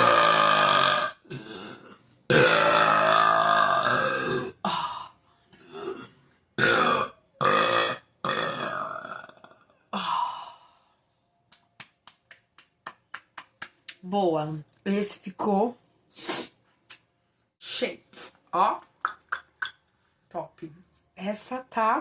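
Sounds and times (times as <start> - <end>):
woman burping: 0.0 - 10.4.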